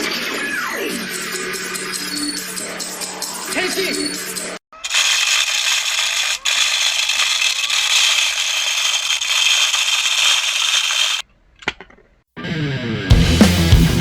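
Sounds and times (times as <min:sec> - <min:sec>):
small vacuum cleaner whirring: 0:04.8 - 0:11.2.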